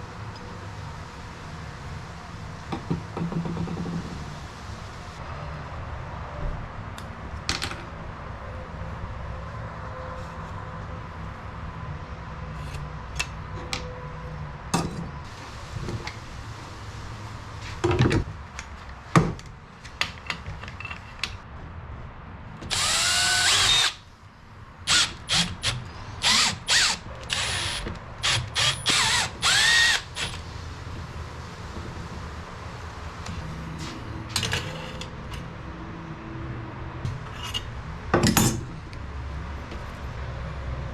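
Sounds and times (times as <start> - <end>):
knocks and clicks of handling tools: 2.7 - 4.2, 17.8 - 21.4
power drill bursts: 22.7 - 24.0, 24.9 - 30.4.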